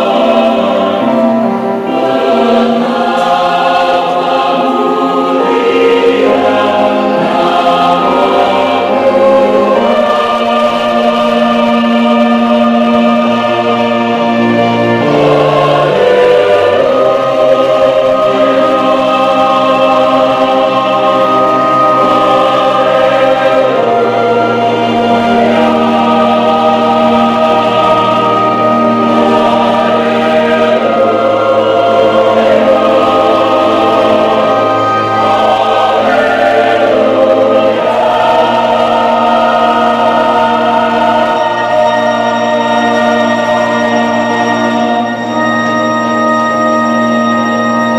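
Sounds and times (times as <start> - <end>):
choir singing a hymn: 0.0 - 47.9.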